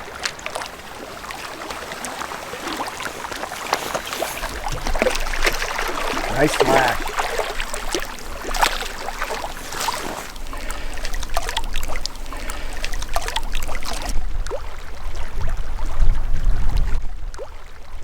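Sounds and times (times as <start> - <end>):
water splashing and trickling: 0.0 - 15.3.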